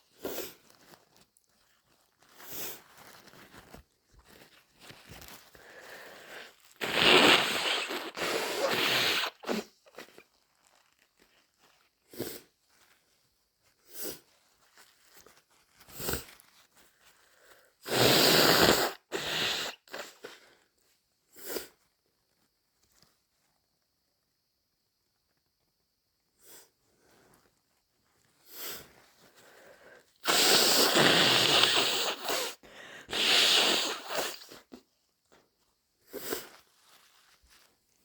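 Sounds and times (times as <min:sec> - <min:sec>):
person blowing congested nose: 0:00.1 - 0:00.7, 0:02.4 - 0:03.7, 0:05.5 - 0:10.2, 0:12.1 - 0:12.5, 0:13.8 - 0:14.3, 0:15.9 - 0:16.4, 0:17.4 - 0:20.6, 0:21.3 - 0:21.8, 0:28.4 - 0:34.8, 0:36.0 - 0:36.6
person sniffing: 0:05.6 - 0:10.2, 0:17.4 - 0:20.5, 0:21.3 - 0:21.8, 0:28.4 - 0:34.8, 0:36.0 - 0:36.7
person sneezing: 0:06.8 - 0:10.1, 0:17.9 - 0:20.3, 0:30.2 - 0:34.8.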